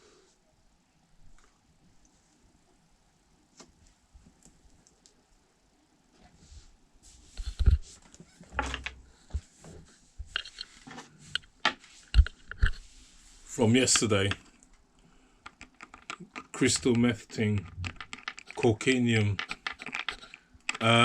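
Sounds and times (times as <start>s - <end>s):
small objects clicking and rattling: 15.4s - 21.0s.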